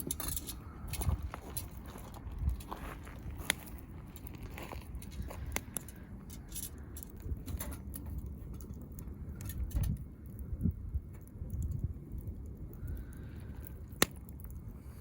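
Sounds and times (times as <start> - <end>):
campfire crackling: 0.0 - 15.0.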